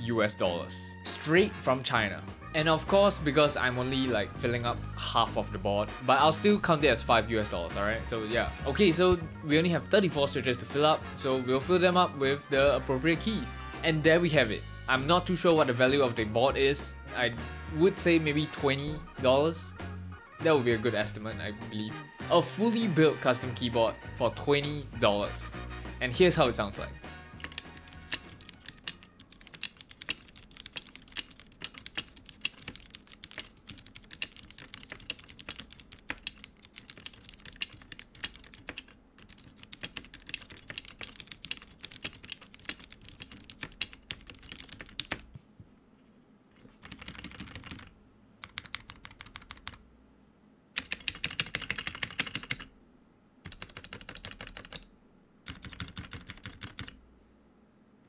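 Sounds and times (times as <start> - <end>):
keyboard keystrokes: 27.4 - 45.3, 46.8 - 49.8, 50.8 - 52.7, 53.4 - 54.9, 55.5 - 57.0.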